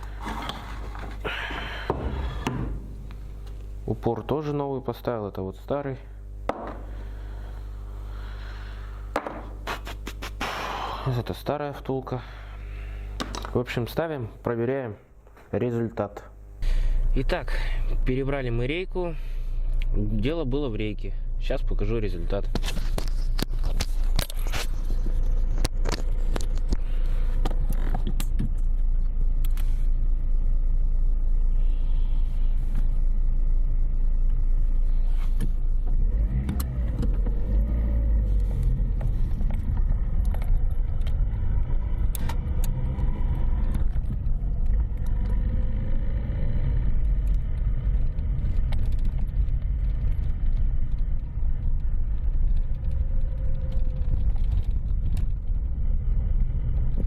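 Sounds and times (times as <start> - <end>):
car engine and road rumble: 16.9 - 57.0
suspension clicks and knocks: 36.2 - 45.5.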